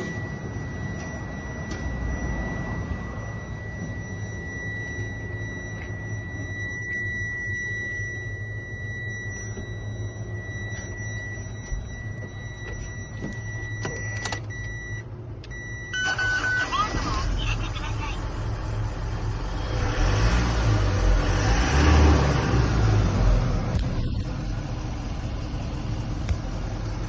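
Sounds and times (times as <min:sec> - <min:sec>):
diesel engine idling: 0:09.8 - 0:21.5, 0:22.2 - 0:27.0.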